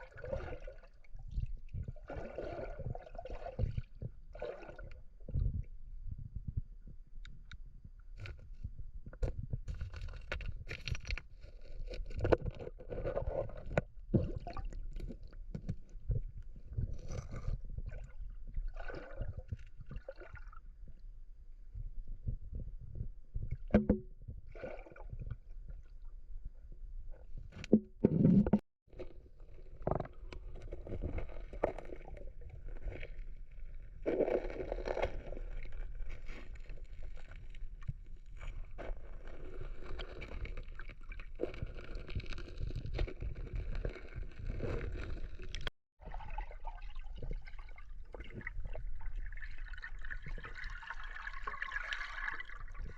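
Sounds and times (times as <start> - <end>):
water sloshing and splashing: 0.0 - 5.6, 9.3 - 20.9, 23.5 - 26.1, 27.6 - 52.9
knocks and handling noises: 23.7 - 24.1.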